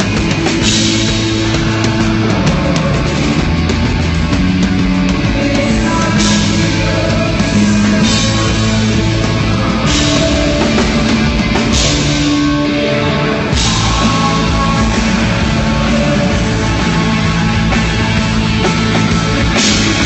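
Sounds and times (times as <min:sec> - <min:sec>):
rock band playing: 0:00.0 - 0:20.0.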